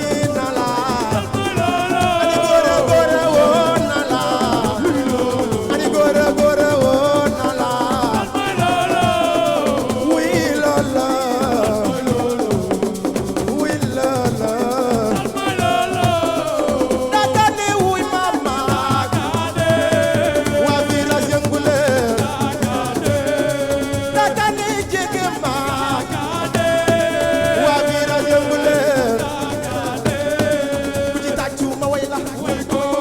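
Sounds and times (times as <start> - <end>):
drum and shaker rhythm: 0.0 - 33.0
wavering lead melody: 2.5 - 3.9.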